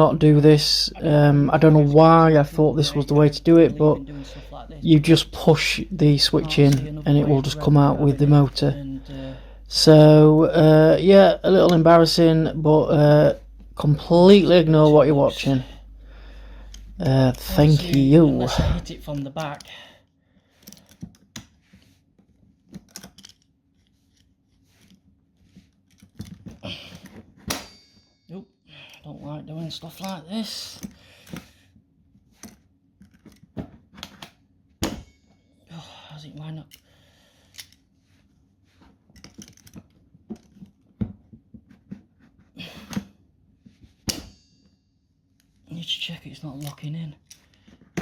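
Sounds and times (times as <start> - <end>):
small clicks and knocks: 22.7 - 25.0, 39.1 - 42.0.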